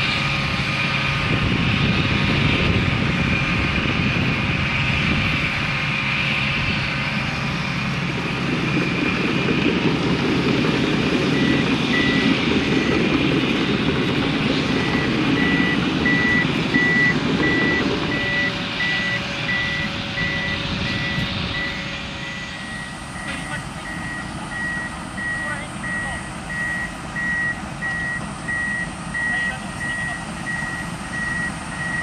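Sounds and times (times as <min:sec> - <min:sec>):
diesel engine running under load: 0:00.0 - 0:32.0
reversing alarm beeping: 0:11.1 - 0:13.2, 0:14.4 - 0:32.0.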